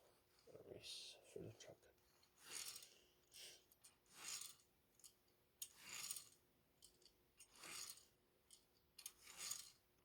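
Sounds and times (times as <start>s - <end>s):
toy truck wheels rolling: 2.3s - 3.0s, 3.8s - 9.8s.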